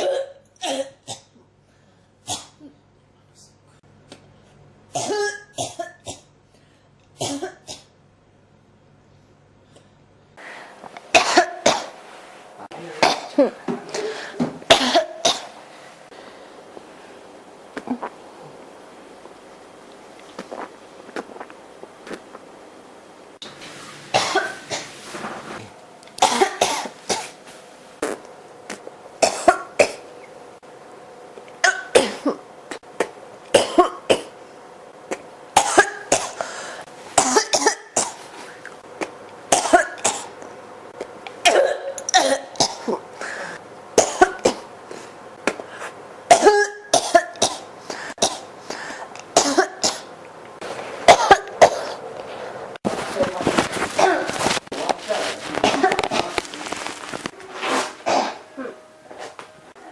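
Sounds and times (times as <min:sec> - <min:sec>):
person coughing: 0:00.0 - 0:01.3, 0:05.0 - 0:06.3, 0:11.2 - 0:11.9, 0:13.0 - 0:15.5, 0:24.2 - 0:24.8, 0:26.2 - 0:27.3, 0:29.2 - 0:30.0, 0:31.6 - 0:32.4, 0:33.0 - 0:34.4, 0:35.1 - 0:36.4, 0:37.2 - 0:38.2, 0:39.6 - 0:40.3, 0:41.4 - 0:43.0, 0:44.0 - 0:44.7, 0:46.3 - 0:50.1, 0:51.1 - 0:52.0, 0:53.4 - 0:54.6, 0:55.4 - 0:56.4, 0:58.0 - 0:59.4.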